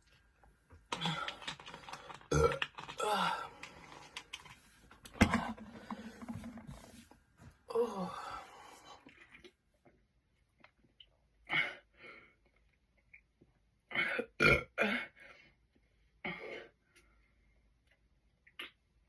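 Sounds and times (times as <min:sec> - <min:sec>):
person burping: 0:02.3 - 0:03.5, 0:13.9 - 0:15.2.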